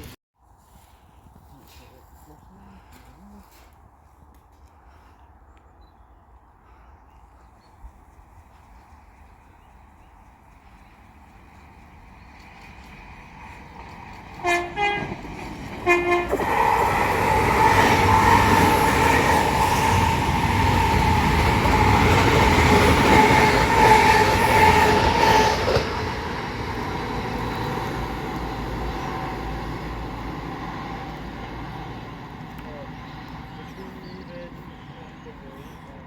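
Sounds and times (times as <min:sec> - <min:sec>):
train passing at speed: 0:08.2 - 0:36.0
train horn blasts: 0:14.4 - 0:16.8.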